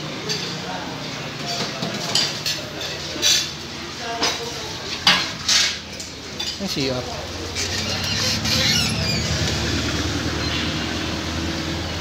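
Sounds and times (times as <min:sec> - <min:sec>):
vehicle engine running: 0:07.2 - 0:12.0.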